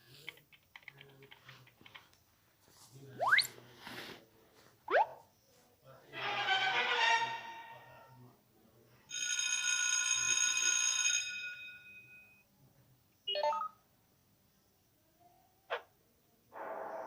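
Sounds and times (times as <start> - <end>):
quick pitched warble: 3.2 - 3.5, 4.9 - 5.2.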